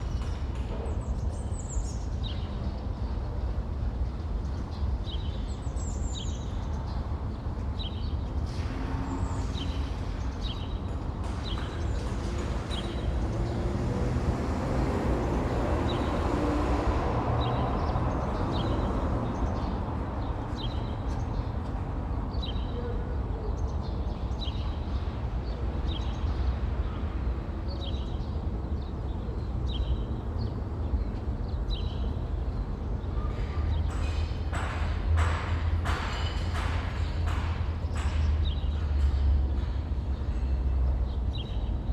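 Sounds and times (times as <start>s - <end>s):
distant traffic rumble: 6.8s - 41.9s
vehicle passing: 13.2s - 18.7s.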